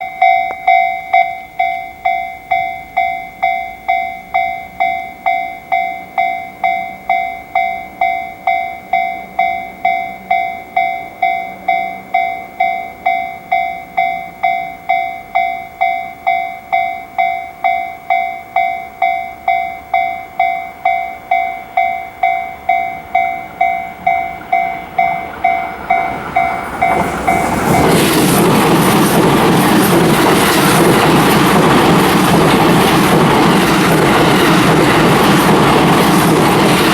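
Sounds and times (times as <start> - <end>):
level crossing warning bell: 0.0 - 36.9
train passing at speed: 18.9 - 36.9.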